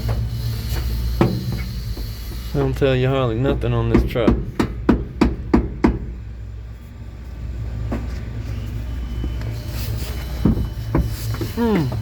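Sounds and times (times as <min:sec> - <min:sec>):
engine idling: 0:00.0 - 0:12.0
sharp knocks: 0:01.2 - 0:02.1, 0:03.9 - 0:06.2.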